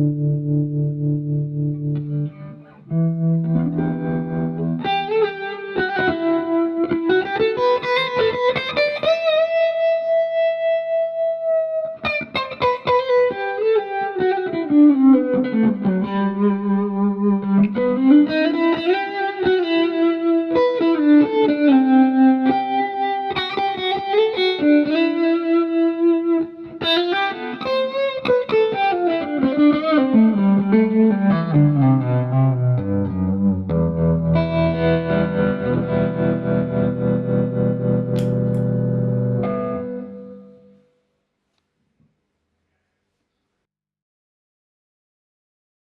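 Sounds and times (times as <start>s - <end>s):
electric guitar with tremolo: 0.0s - 40.9s.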